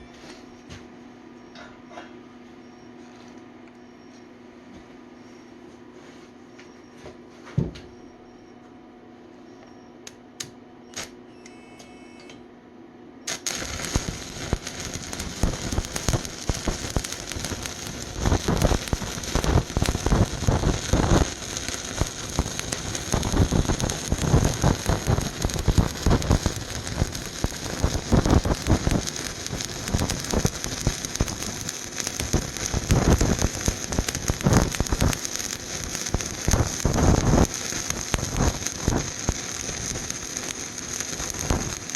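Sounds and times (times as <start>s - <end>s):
welding arc crackling: 13.3s - 41.9s.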